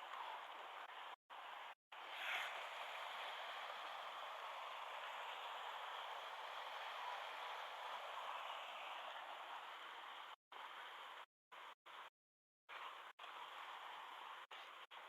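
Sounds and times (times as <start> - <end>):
stream water rushing over rocks: 0.1 - 11.2.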